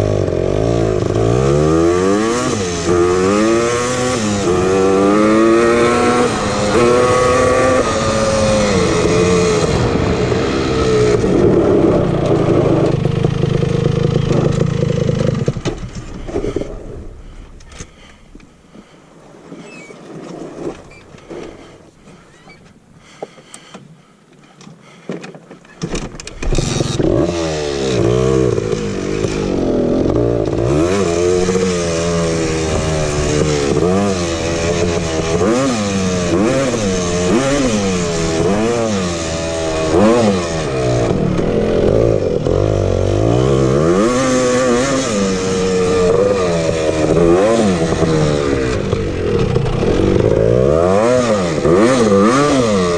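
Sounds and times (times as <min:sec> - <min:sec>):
two-stroke engine revving: 0:00.0 - 0:18.1, 0:26.2 - 0:52.9
scattered knocks and clatter: 0:12.3 - 0:16.8, 0:25.1 - 0:27.1.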